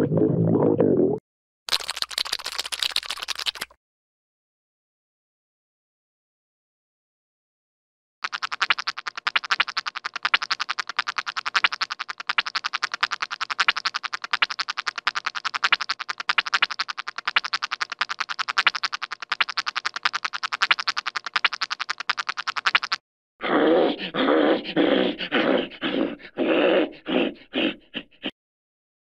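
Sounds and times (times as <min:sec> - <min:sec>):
rattle of sharp clicks: 0:08.2 - 0:23.0.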